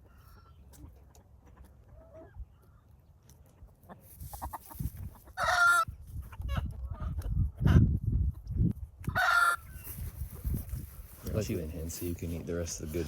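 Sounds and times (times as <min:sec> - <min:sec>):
chickens clucking: 0:00.0 - 0:10.5
chicken squawk: 0:03.9 - 0:07.8, 0:09.1 - 0:09.9
rustling: 0:09.8 - 0:13.0.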